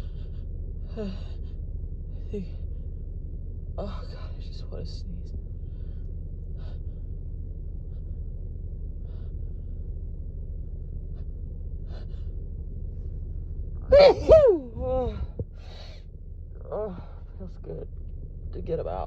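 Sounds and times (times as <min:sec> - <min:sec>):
faint breaths: 0:00.0 - 0:03.5, 0:05.4 - 0:16.2
low steady hum: 0:00.0 - 0:19.0
woman sneezing: 0:13.9 - 0:14.7.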